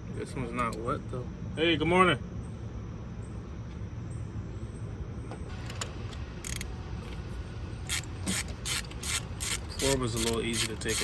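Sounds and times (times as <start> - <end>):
vehicle engine rumble: 2.2 - 11.0.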